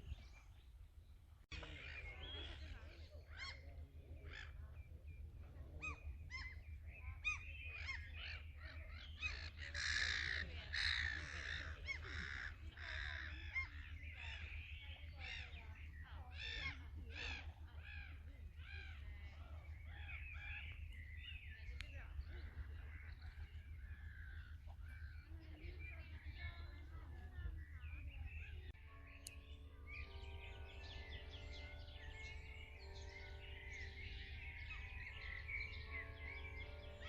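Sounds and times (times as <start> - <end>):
chorus of bird calls: 1.5 - 37.0
steady low hum: 10.6 - 37.0.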